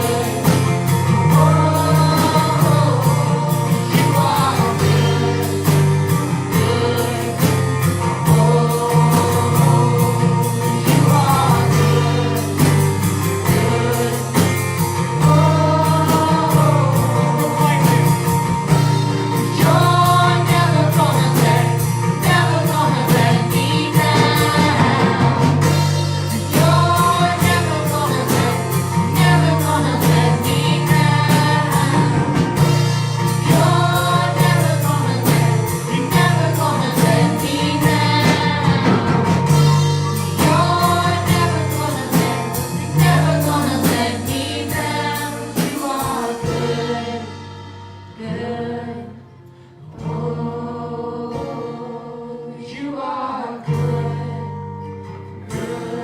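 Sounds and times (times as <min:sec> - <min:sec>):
band with a steady beat: 0:00.0 - 0:48.6
voices singing together: 0:00.0 - 0:56.0.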